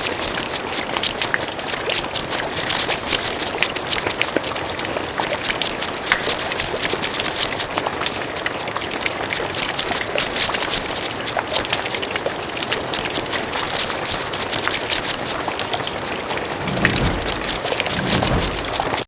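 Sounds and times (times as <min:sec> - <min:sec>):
low thuds: 0:16.6 - 0:19.0.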